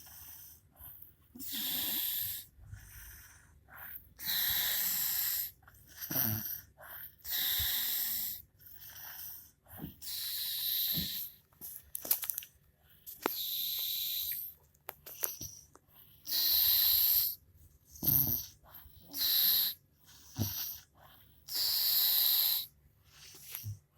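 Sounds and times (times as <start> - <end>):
woman snoring: 6.0 - 6.7.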